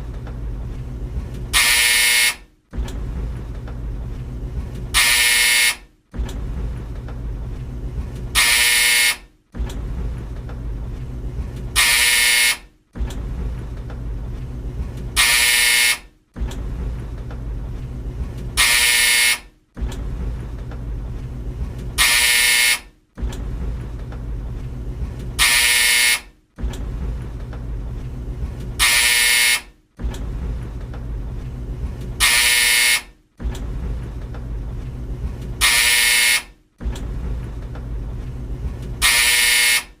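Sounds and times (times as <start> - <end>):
tumble dryer rumbling: 0.0 - 39.3
harsh dryer buzzer: 1.5 - 2.5, 4.9 - 5.9, 8.3 - 9.3, 11.8 - 12.7, 15.2 - 16.1, 18.6 - 19.5, 22.0 - 22.9, 25.4 - 26.3, 28.8 - 29.7, 32.2 - 33.1, 35.6 - 36.6, 39.0 - 40.0.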